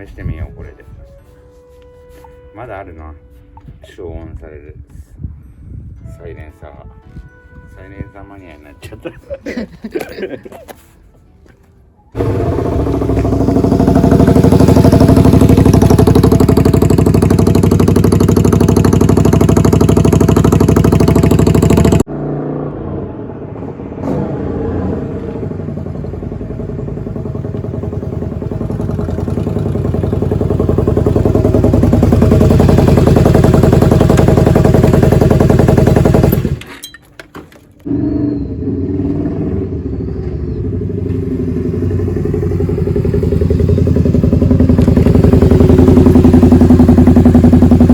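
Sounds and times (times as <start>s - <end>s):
motorcycle engine running: 12.2s - 23.2s, 23.8s - 36.6s, 37.9s - 47.9s.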